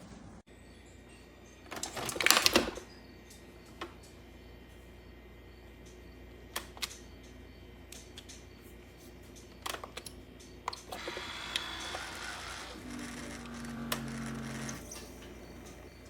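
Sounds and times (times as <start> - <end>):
coffee maker hissing: 10.8 - 16.0.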